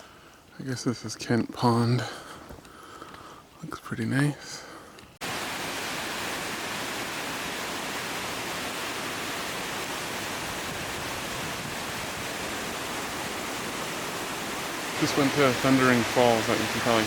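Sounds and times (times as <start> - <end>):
waterfall rushing: 5.2 - 17.0.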